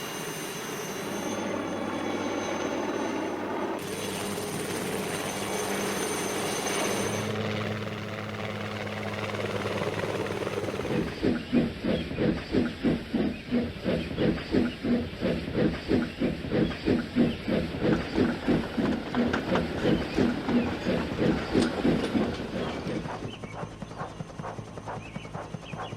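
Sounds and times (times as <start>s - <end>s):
steam locomotive chuffing: 0.0s - 25.9s
steam locomotive hissing: 9.3s - 25.9s.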